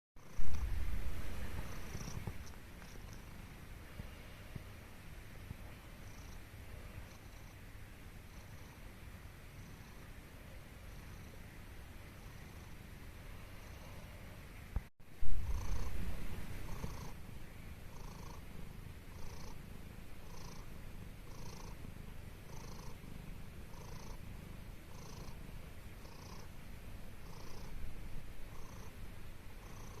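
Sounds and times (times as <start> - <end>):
low rumble: 0.2 - 2.6, 15.1 - 16.8
cat snoring: 0.2 - 4.7, 5.6 - 7.6, 8.3 - 8.9, 9.5 - 11.5, 12.1 - 14.3, 15.3 - 17.2, 17.9 - 26.6, 27.2 - 27.8, 28.5 - 29.0, 29.6 - 30.0.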